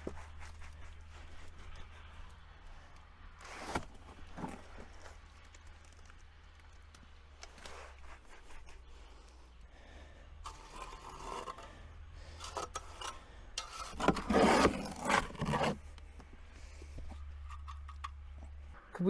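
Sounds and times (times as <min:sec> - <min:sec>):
shovel scraping gritty mix: 0:03.4 - 0:05.6, 0:10.4 - 0:15.9.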